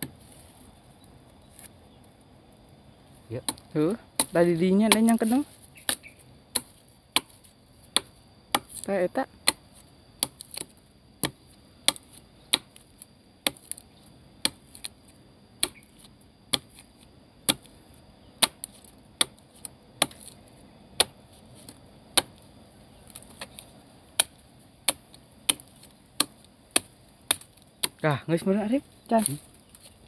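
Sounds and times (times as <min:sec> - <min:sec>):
blade chopping into wood: 0:04.2 - 0:07.4, 0:08.0 - 0:09.6, 0:10.2 - 0:12.8, 0:13.4 - 0:13.8, 0:15.6 - 0:17.7, 0:18.4 - 0:20.4, 0:21.0 - 0:22.4, 0:24.2 - 0:28.0.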